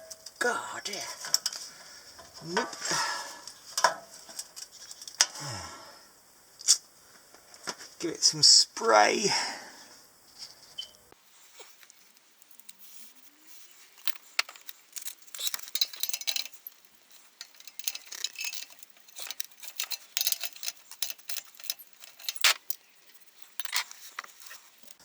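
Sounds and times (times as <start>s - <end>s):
metal tools clinking on bolt: 11.6s - 25.0s.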